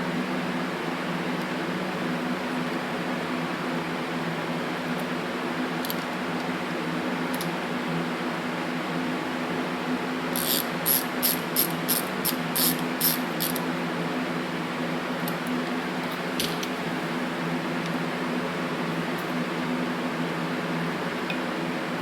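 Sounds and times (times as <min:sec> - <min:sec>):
steady background hum: 0:00.0 - 0:22.0.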